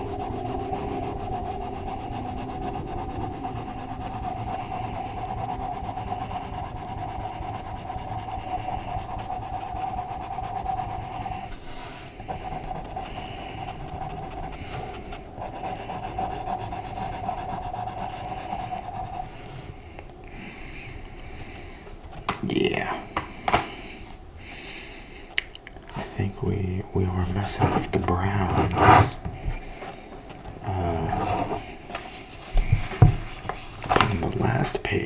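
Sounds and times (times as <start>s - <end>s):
pencil scratching on paper: 0.0s - 19.7s, 26.0s - 29.3s, 30.7s - 31.8s, 32.5s - 35.0s.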